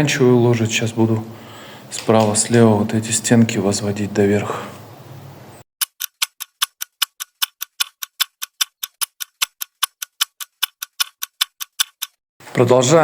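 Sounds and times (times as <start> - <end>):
fast clock-like ticking: 5.8 - 12.2.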